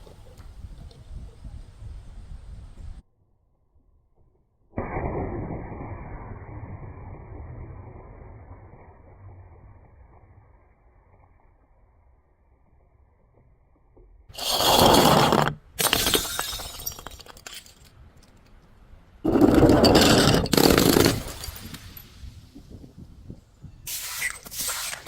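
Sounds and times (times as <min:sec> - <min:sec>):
glass containers shattering: 0:15.8 - 0:18.0, 0:19.3 - 0:22.2.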